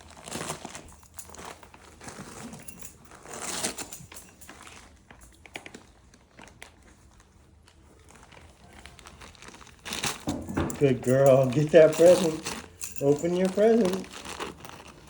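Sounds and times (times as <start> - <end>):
gift wrapping crinkling: 0.0 - 15.0.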